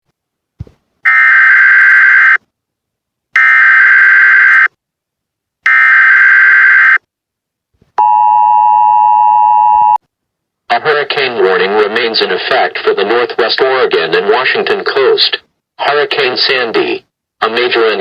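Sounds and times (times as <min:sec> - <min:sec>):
two-tone attention signal: 0:08.0 - 0:10.0.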